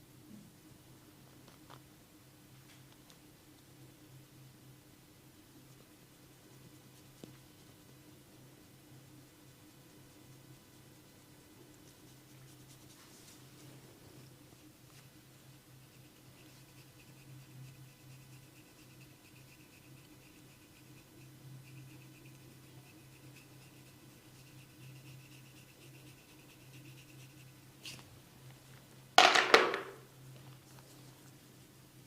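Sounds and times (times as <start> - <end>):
steady low hum: 0.0 - 28.8
hands rubbing skin and hair: 11.8 - 13.8.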